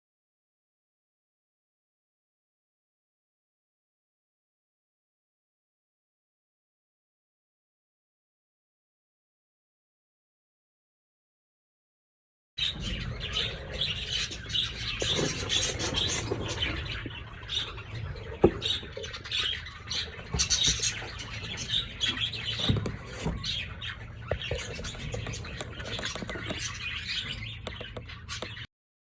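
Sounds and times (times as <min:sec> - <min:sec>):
budgerigars chattering and squawking: 0:12.6 - 0:28.7.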